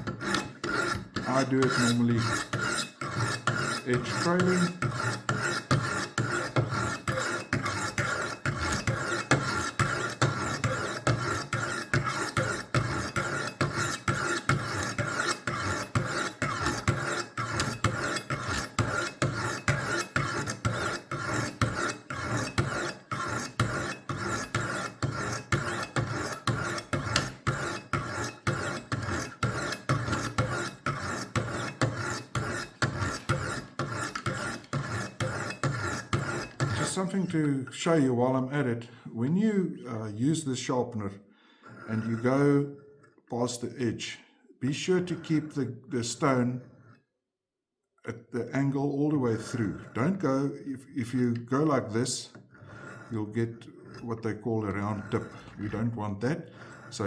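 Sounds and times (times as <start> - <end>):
sharpening stones rasping on blade: 0.0 - 37.4, 49.4 - 50.2, 52.3 - 53.2, 54.8 - 55.8, 56.6 - 57.0.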